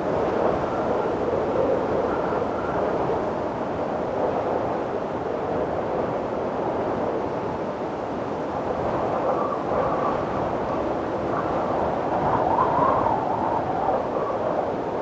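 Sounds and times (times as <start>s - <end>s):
steady rushing wind: 0.0s - 15.0s.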